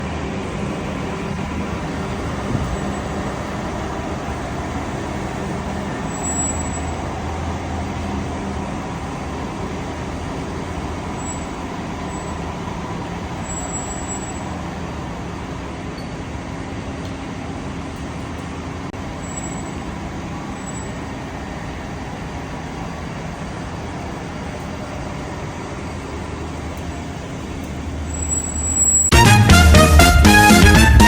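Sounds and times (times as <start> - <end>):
car running: 0.0 - 31.0
high-pitched brake squeals: 1.3 - 8.2, 10.2 - 14.8, 15.8 - 16.3, 19.1 - 22.0, 27.6 - 29.2.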